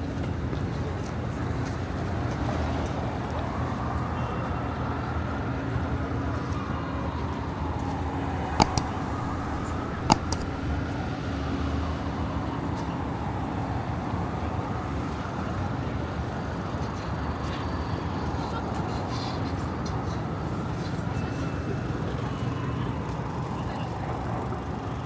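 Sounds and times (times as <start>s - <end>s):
road noise and engines: 0.0s - 25.0s
sharp knocks: 8.6s - 10.9s.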